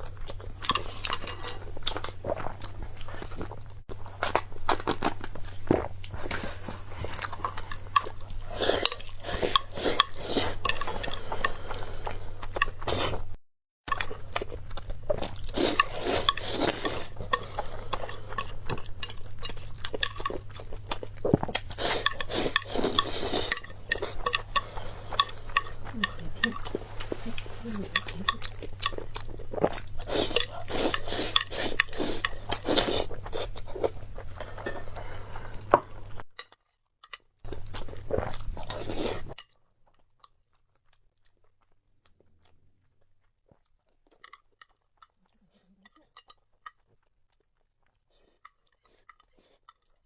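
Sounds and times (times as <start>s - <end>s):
close chewing: 0.0s - 50.0s
utensils clinking against a bowl: 15.6s - 20.5s, 21.7s - 29.2s, 30.0s - 33.4s.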